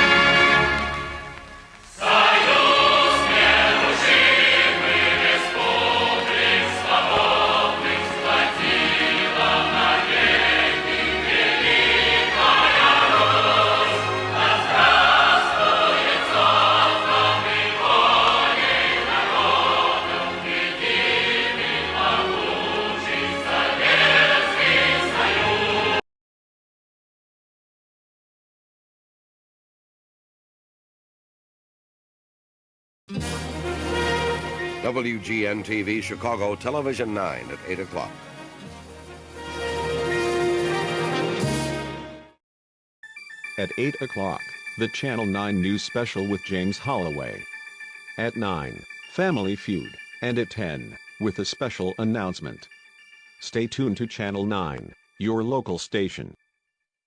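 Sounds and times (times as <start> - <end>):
choir singing with instruments: 1.9 - 26.0, 43.6 - 52.8.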